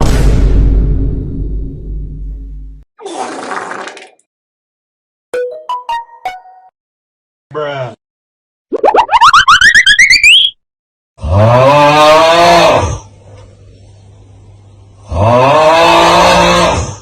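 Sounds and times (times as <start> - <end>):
rising boing sound effect: 8.7 - 10.4
loud moo-like calls: 11.2 - 13.1, 15.0 - 17.0.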